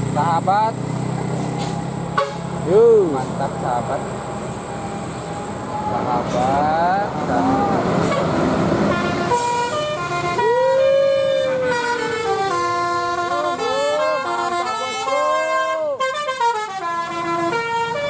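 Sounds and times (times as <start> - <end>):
bus musical horn playing a tune: 2.1 - 2.6, 8.0 - 18.0.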